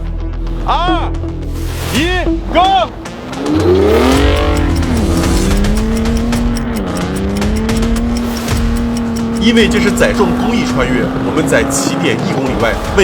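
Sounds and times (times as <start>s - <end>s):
pickup truck engine revving: 3.0s - 13.0s.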